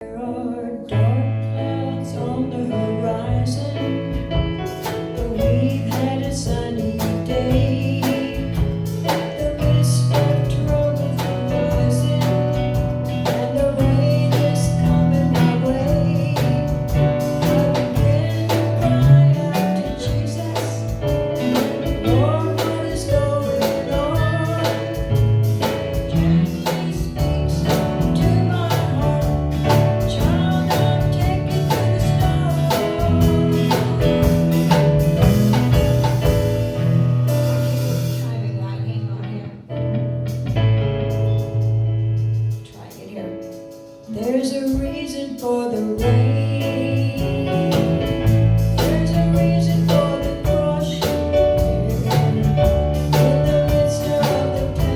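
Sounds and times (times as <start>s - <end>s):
instrumental gospel music: 0.0s - 54.9s.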